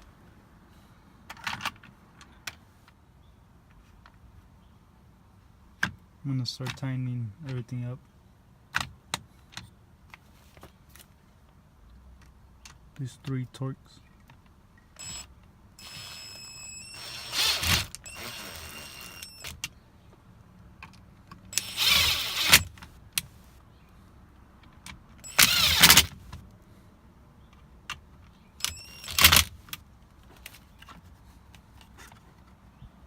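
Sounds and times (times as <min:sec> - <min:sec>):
power driver whirring: 0:15.0 - 0:19.6, 0:21.6 - 0:23.4, 0:25.2 - 0:26.3, 0:28.6 - 0:29.5.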